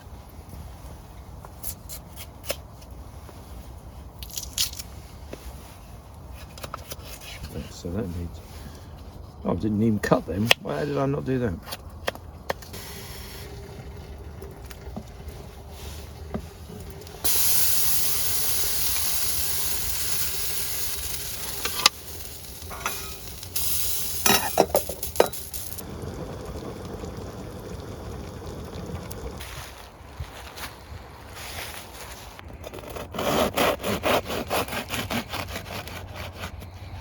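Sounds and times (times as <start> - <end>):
food sizzling in a pot: 17.2 - 28.5.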